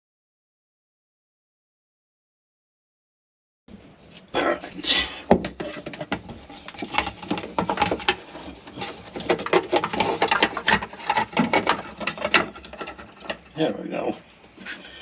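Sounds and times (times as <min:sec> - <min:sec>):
plastic clicks knocks and scrapes: 0:05.3 - 0:13.6.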